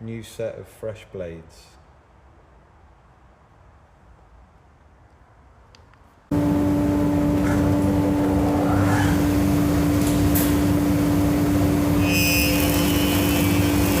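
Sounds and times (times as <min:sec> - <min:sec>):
high machine whine: 0:06.3 - 0:14.0
planer thicknesser running: 0:06.3 - 0:14.0.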